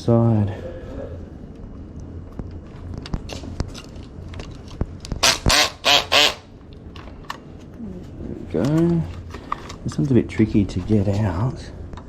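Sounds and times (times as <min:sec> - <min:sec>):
harsh quack-like bird calls: 0:05.5 - 0:06.5.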